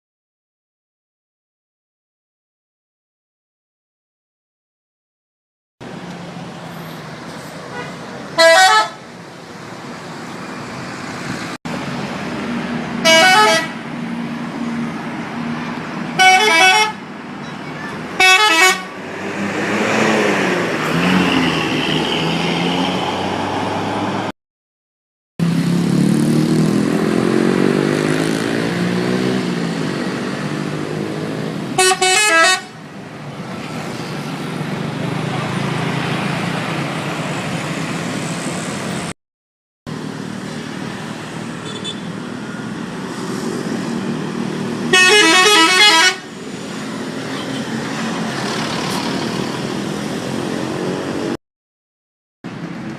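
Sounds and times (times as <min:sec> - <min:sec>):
bus engines: 0:05.8 - 0:24.4, 0:25.4 - 0:39.2, 0:39.9 - 0:51.4, 0:52.5 - 0:52.9
road traffic: 0:05.8 - 0:24.4, 0:25.4 - 0:39.2, 0:39.9 - 0:51.4, 0:52.4 - 0:52.9
multi-tone musical bus horn: 0:07.7 - 0:09.0, 0:13.0 - 0:13.8, 0:16.2 - 0:17.0, 0:17.8 - 0:19.0, 0:31.8 - 0:32.8, 0:44.9 - 0:46.3.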